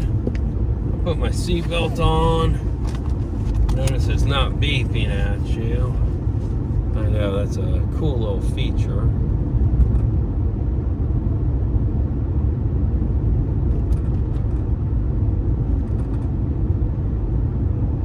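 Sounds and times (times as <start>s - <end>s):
car engine and road noise: 0.0s - 18.0s.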